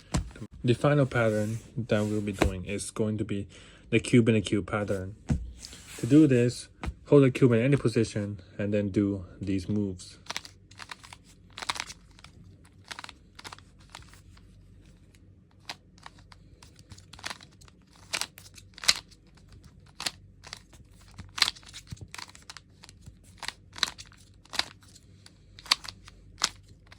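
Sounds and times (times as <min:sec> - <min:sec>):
puzzle cube clicking: 0:19.9 - 0:24.9, 0:25.6 - 0:26.9.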